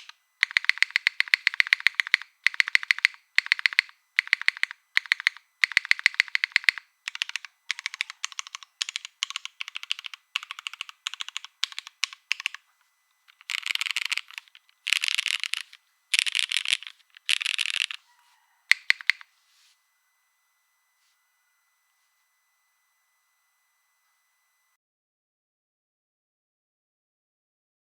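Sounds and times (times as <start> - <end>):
keyboard typing: 0.0 - 12.6, 13.2 - 18.1, 18.7 - 19.3.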